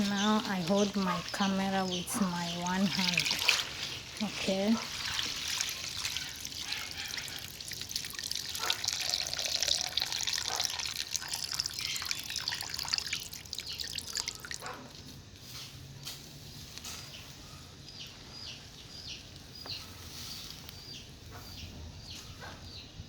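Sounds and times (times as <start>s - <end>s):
water splashing and trickling: 0.0s - 15.1s
small drips and clicks: 4.9s - 14.7s.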